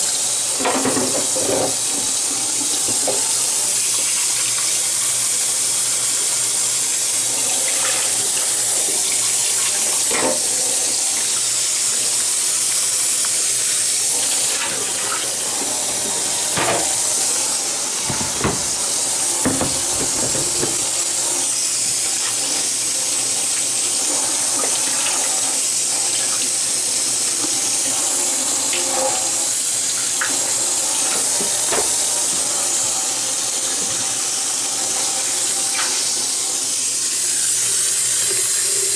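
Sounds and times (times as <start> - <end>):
tap water running into sink: 0.0 - 38.9
knocks and clunks of handling: 18.0 - 21.0.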